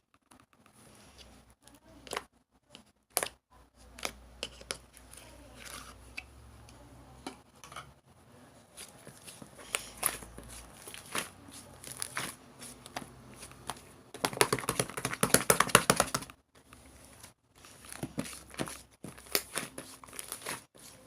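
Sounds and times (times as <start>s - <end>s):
slime squishing sticky pops: 18.0s - 20.6s.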